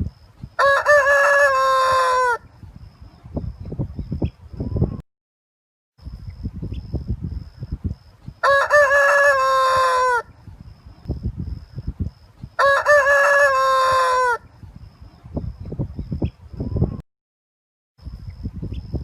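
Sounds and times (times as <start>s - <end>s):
rooster crowing: 0.6s - 2.4s, 8.4s - 10.3s, 12.6s - 14.5s.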